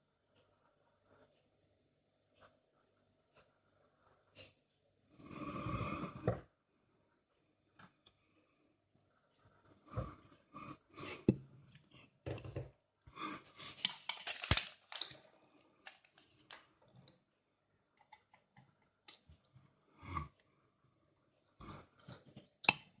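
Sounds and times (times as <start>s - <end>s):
plastic shower head handled: 13.6s - 15.2s, 15.8s - 16.7s.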